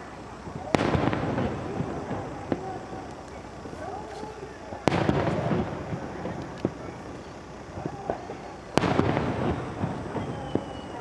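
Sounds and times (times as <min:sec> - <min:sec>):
firework bang: 0:00.0 - 0:11.0
firework crackling: 0:00.0 - 0:11.0
firework pops: 0:00.4 - 0:11.0.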